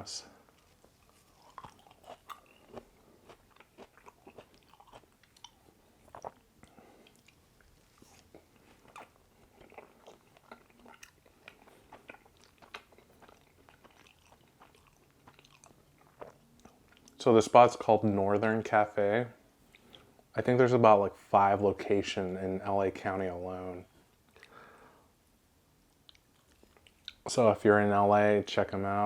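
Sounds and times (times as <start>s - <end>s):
person chewing noodles: 0.5s - 17.2s, 26.0s - 27.2s.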